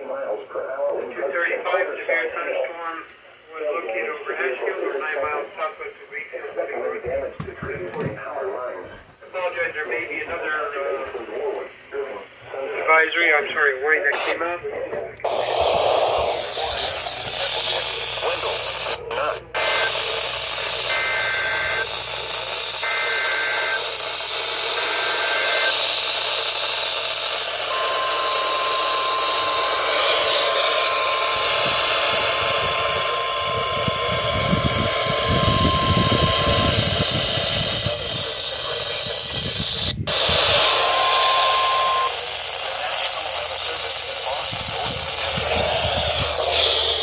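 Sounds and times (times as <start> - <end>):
radio static: 0.0 - 47.0
steady warning alarm tone: 1.2 - 47.0
screeching digital data bursts: 19.6 - 47.0.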